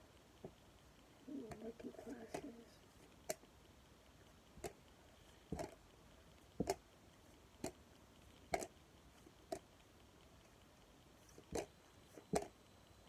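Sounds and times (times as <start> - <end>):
card tapping on card: 5.5 - 5.8, 6.6 - 6.8, 8.5 - 8.7, 12.3 - 12.5.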